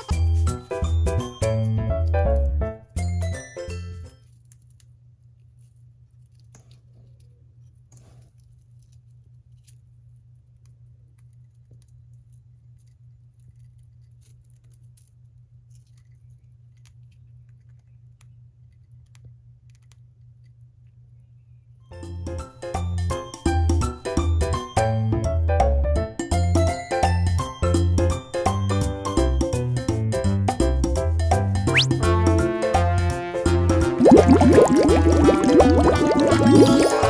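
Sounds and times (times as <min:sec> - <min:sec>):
hamster gnawing and chewing: 0:04.3 - 0:20.9.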